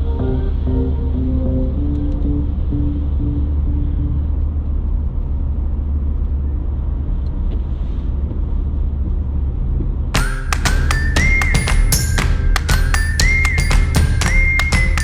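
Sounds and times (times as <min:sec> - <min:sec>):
vehicle engine and road noise: 0:00.0 - 0:15.0
music with drums: 0:10.2 - 0:15.0.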